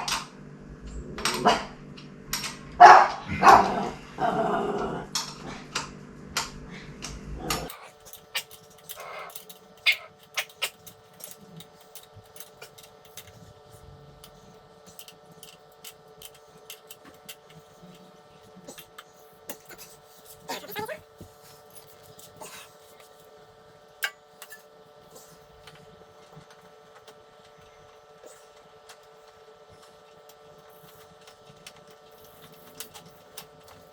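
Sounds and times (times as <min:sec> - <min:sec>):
faint steady hum: 0:00.0 - 0:33.9
dog barking: 0:02.8 - 0:04.0.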